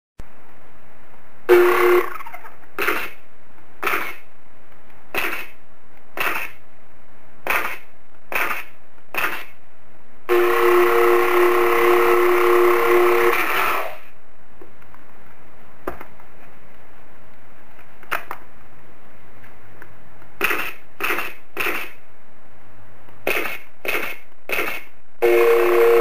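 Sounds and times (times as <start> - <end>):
background hiss: 0.2 - 26.0
toy pistol firing shots: 23.3 - 24.9.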